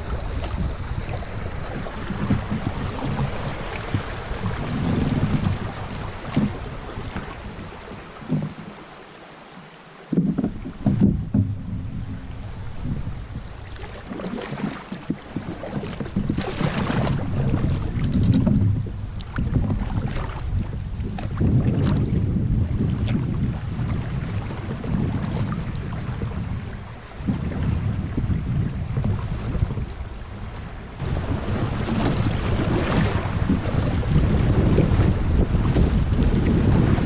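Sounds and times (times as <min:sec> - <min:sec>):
wind buffeting microphone: 0:00.0 - 0:08.8, 0:10.1 - 0:37.0
river water: 0:00.0 - 0:37.0
sharp knocks: 0:10.1 - 0:13.8.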